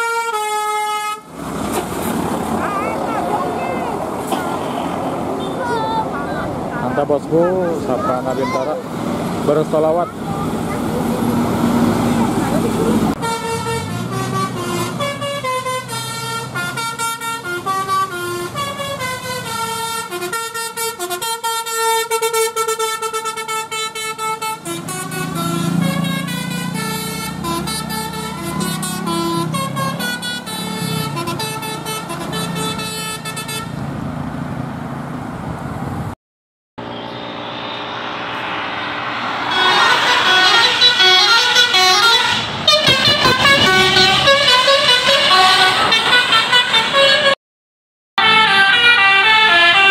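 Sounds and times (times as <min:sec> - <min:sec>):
multi-tone bus horn melody: 0:00.0 - 0:01.4, 0:02.6 - 0:08.8, 0:09.9 - 0:33.8, 0:38.2 - 0:47.4, 0:48.2 - 0:49.9
bus engine hum: 0:00.0 - 0:36.2, 0:36.8 - 0:47.4.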